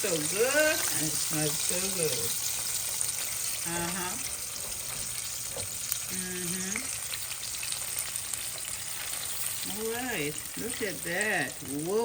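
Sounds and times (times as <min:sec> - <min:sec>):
hot oil sizzling in a frying pan: 0:00.0 - 0:12.0.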